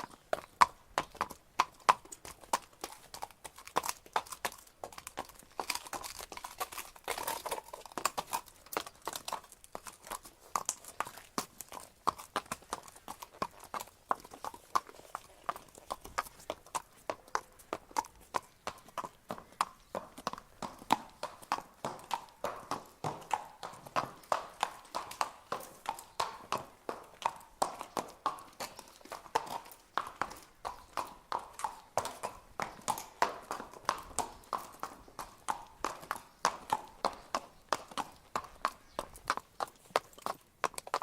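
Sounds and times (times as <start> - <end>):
horse hooves clip-clopping: 0.0 - 41.0.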